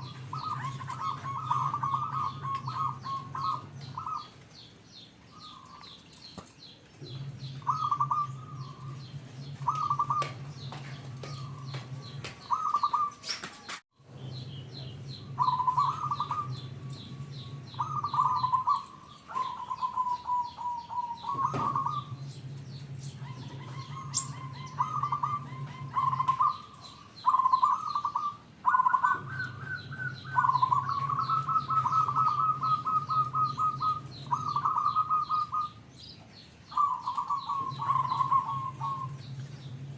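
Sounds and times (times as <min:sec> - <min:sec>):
dove cooing: 0:00.0 - 0:04.4, 0:07.0 - 0:13.6, 0:14.4 - 0:39.9
small birds chirping: 0:00.0 - 0:39.9.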